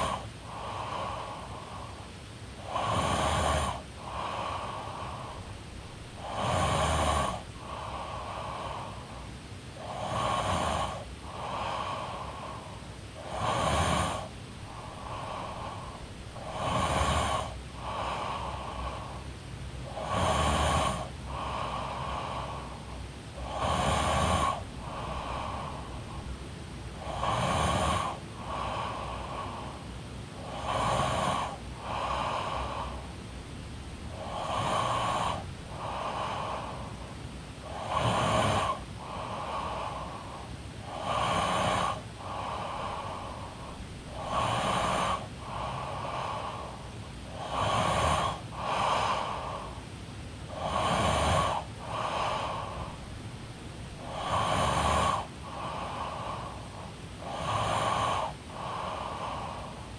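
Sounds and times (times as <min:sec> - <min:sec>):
woman snoring: 0:00.0 - 0:02.0, 0:02.6 - 0:09.2, 0:09.8 - 0:29.8, 0:30.4 - 0:33.2, 0:33.9 - 0:49.8, 0:50.5 - 0:53.2, 0:53.9 - 0:59.9.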